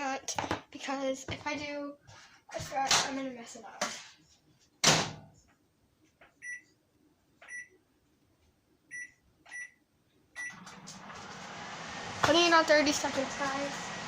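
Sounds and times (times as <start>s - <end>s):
microwave keypad beeps: 6.4s - 6.7s, 7.5s - 7.8s, 8.9s - 9.8s, 10.4s - 10.7s
microwave oven humming: 10.4s - 14.0s.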